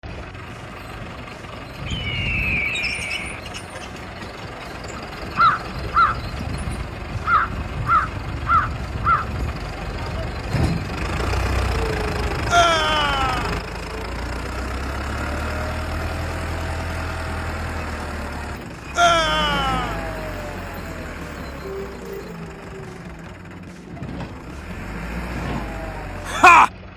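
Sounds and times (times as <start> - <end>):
bird calling: 1.8 - 4.2, 5.3 - 6.4, 7.2 - 9.3.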